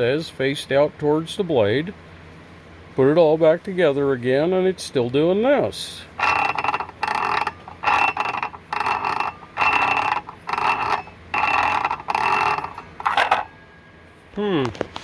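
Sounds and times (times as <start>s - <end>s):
saw blade turned by hand: 6.2s - 13.6s.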